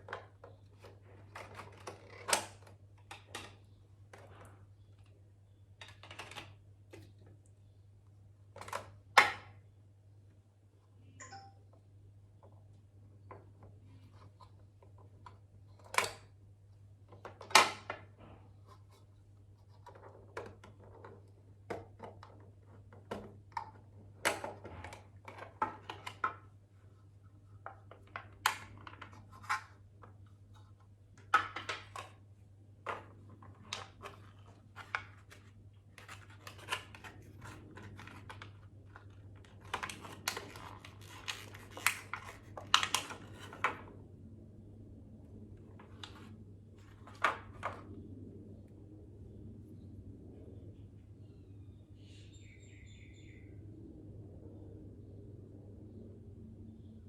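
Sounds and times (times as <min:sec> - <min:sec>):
packaging clicks scrapes and rustles: 0:33.4 - 0:43.8.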